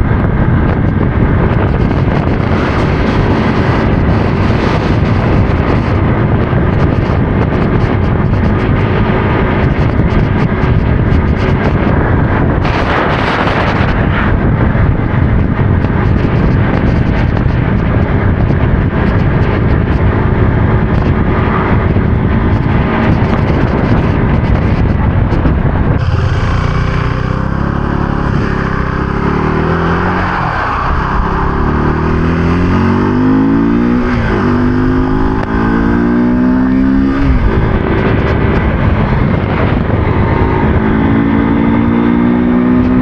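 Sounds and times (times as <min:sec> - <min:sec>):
motorcycle engine running: 0:00.0 - 0:30.1, 0:31.2 - 0:43.0
wind noise on microphone: 0:00.0 - 0:43.0.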